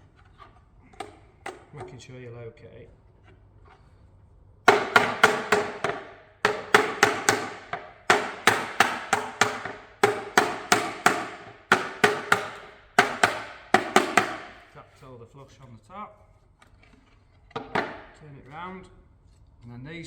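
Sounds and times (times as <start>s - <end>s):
rubber mallet knocking plywood: 4.7s - 14.7s.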